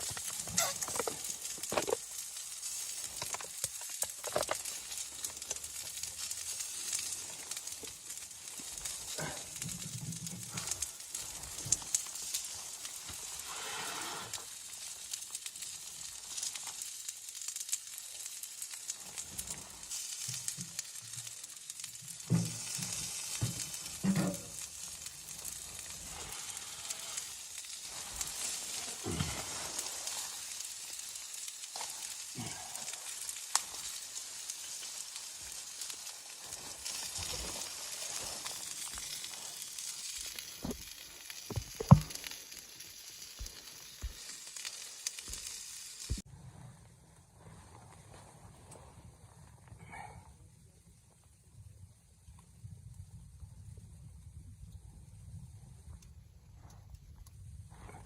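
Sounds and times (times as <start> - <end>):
food sizzling in a pan: 0.0 - 46.3.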